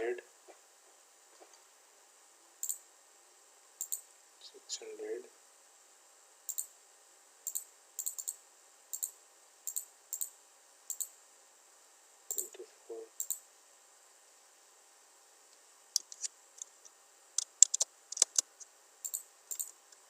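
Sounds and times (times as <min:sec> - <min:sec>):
computer mouse button clicks: 0:17.4 - 0:18.4.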